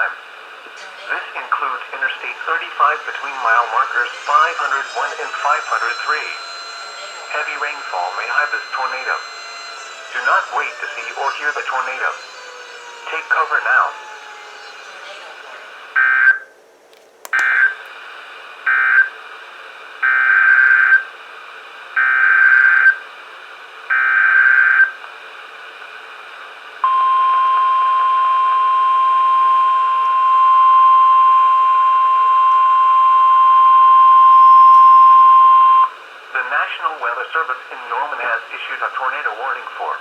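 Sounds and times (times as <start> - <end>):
steady warning alarm tone: 0.9 - 16.4, 20.0 - 21.1, 22.0 - 23.0, 26.8 - 36.0
buzzy data bursts: 1.1 - 15.7.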